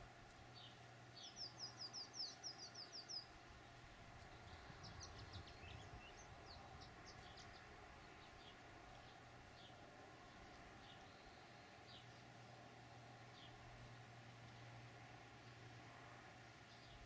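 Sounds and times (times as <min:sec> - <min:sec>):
small bird chirping: 0:00.5 - 0:12.2.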